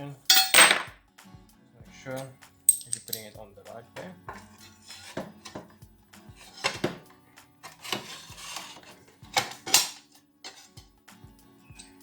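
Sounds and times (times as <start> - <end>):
quiet background music: 0.0 - 12.0
metal clinks and knocks: 0.3 - 1.0, 2.7 - 3.3.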